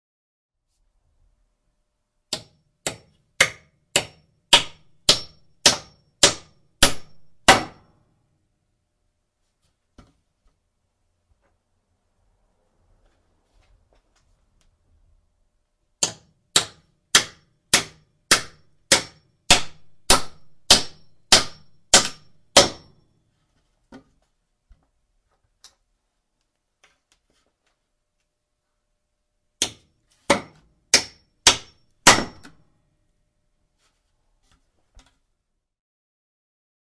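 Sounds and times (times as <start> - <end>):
hammer driving a nail: 2.3 - 7.9, 16.0 - 23.0, 29.6 - 32.6.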